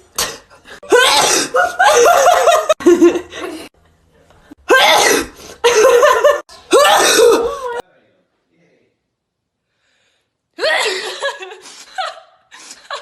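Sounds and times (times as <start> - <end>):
person sneezing loudly: 4.7 - 5.6.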